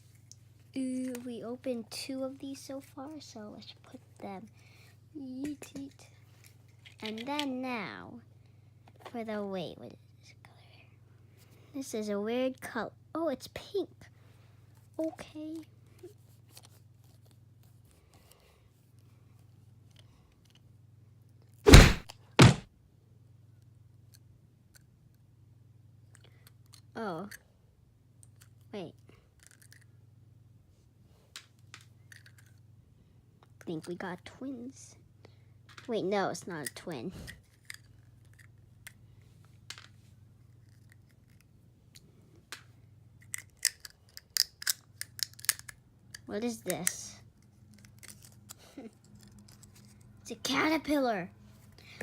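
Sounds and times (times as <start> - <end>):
faint low hum: 0.0 - 22.1
plastic toys clicking and rustling: 5.3 - 7.6, 29.4 - 29.9, 31.4 - 32.6, 36.6 - 39.0, 39.7 - 50.1
loud thumps: 21.7 - 22.6.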